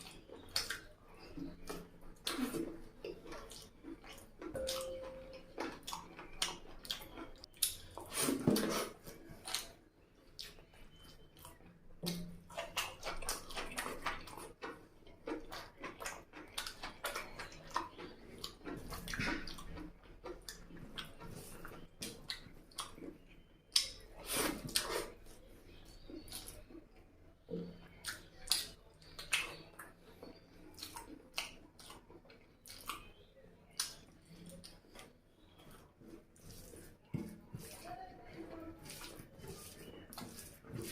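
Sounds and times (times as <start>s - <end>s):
lip-smacking and slurping: 0.0s - 4.5s
wet chewing: 0.0s - 40.9s.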